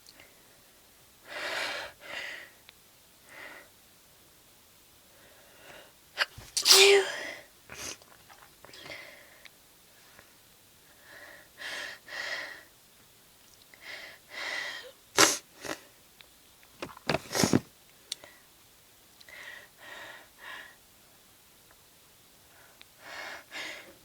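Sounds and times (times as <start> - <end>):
woman sneezing: 6.2 - 7.9.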